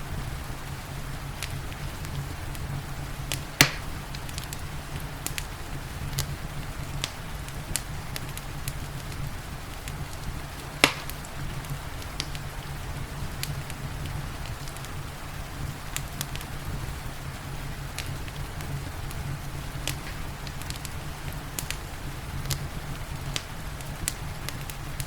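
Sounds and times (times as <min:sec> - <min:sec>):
rain hissing: 0:00.0 - 0:25.0
wood fire crackling: 0:00.0 - 0:25.0
loud sharp fire pops: 0:01.4 - 0:05.5, 0:09.9 - 0:12.5, 0:17.9 - 0:25.0.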